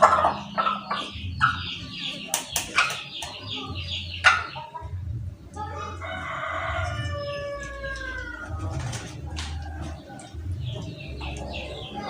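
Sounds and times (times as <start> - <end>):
rooster crowing: 6.0 - 8.7.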